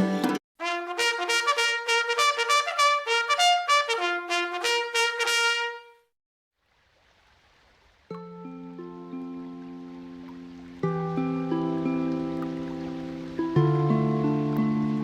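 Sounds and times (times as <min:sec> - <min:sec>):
brass alarm melody: 0:00.6 - 0:06.1.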